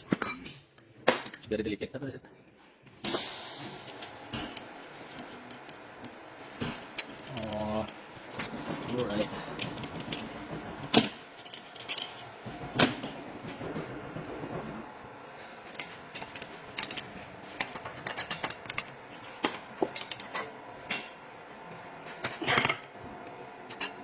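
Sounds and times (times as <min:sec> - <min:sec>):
metal tools clinking: 0:00.0 - 0:01.5, 0:10.9 - 0:12.3.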